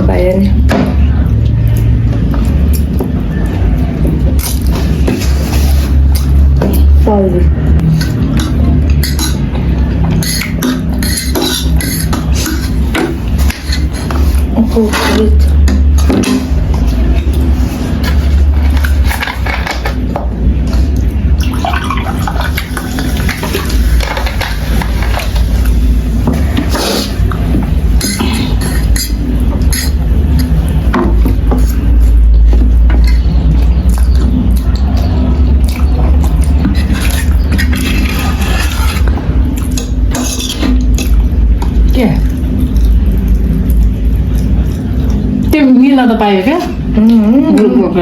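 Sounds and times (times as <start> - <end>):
slurping and chewing noodles: 1.0 - 45.5
utensils clicking against dish: 7.8 - 20.1, 22.2 - 41.2
cutlery clinking against a dish: 7.9 - 14.3.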